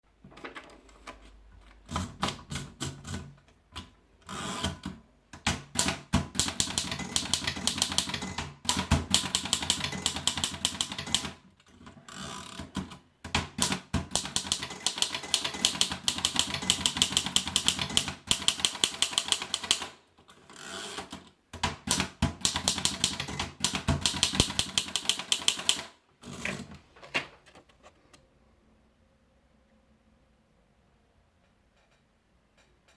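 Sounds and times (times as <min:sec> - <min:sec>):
typewriter typing: 0:00.3 - 0:11.4, 0:12.3 - 0:20.0, 0:20.7 - 0:27.9.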